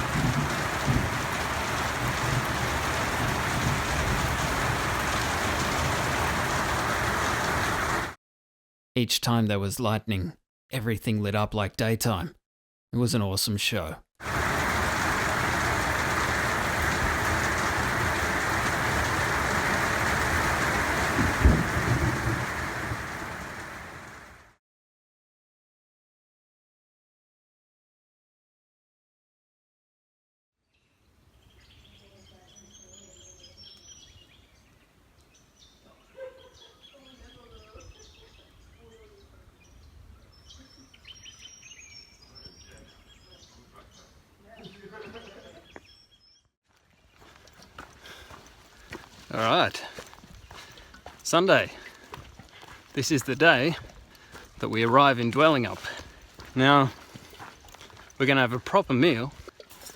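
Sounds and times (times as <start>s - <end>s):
heavy rain: 0.0s - 8.2s, 14.2s - 24.6s, 47.8s - 59.5s.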